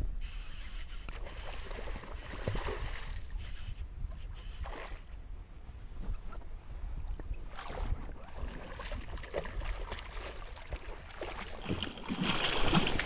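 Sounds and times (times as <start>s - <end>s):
wind rumble on microphone: 0.0s - 11.7s
water sloshing and splashing: 1.1s - 3.4s, 7.2s - 13.0s.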